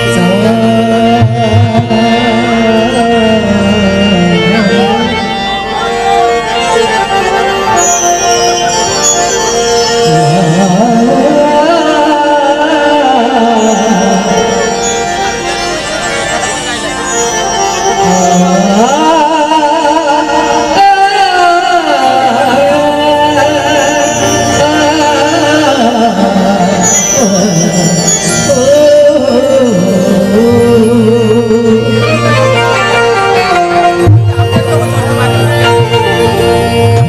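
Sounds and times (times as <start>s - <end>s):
instrumental accompaniment: 0.0s - 37.0s
person singing wavering notes: 0.0s - 37.0s.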